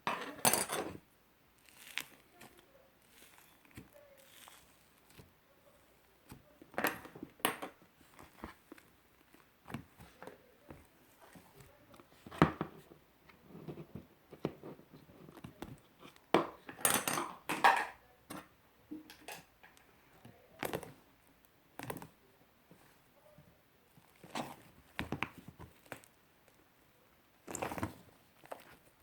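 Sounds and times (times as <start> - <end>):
slime squishing and popping: 1.6 - 5.3.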